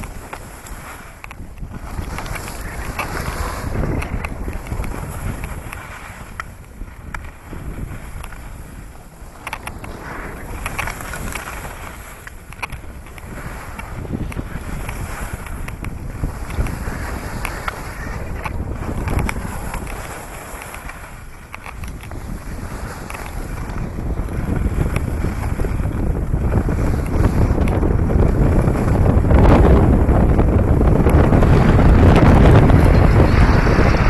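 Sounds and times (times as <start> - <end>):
wind buffeting microphone: 0.0 - 34.0.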